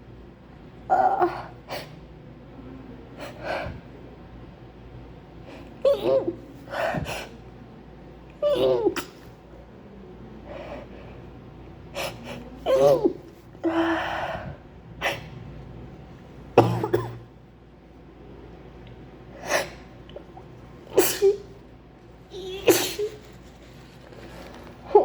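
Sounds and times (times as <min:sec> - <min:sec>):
woman sneezing: 0:12.0 - 0:13.9, 0:20.9 - 0:21.6, 0:22.4 - 0:23.4.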